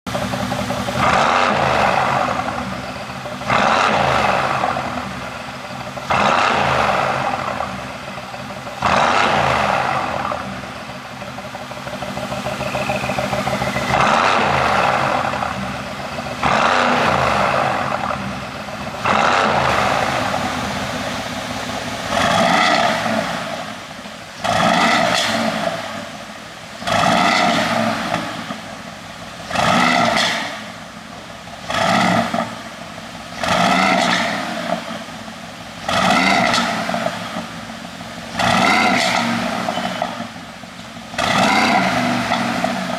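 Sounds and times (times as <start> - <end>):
car engine revving: 0.1 - 42.9
exhaust pops crackling: 11.3 - 26.0.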